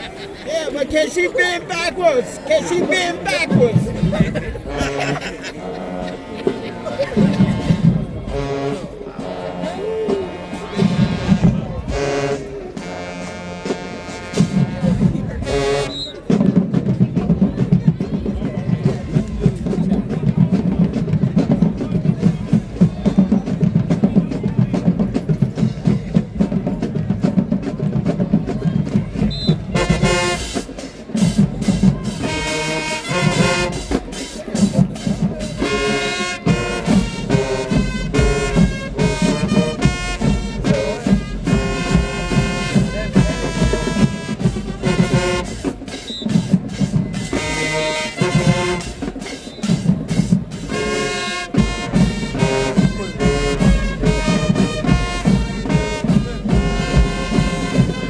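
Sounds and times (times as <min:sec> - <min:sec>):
marching drumline: 0:00.1 - 0:58.0
brass horn chords: 0:00.8 - 0:16.3, 0:29.1 - 0:58.0.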